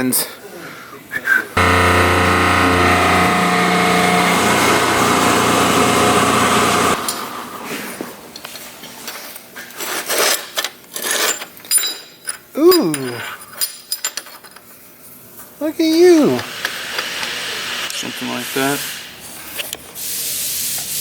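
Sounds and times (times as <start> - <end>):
power tool motor running: 1.6 - 8.1.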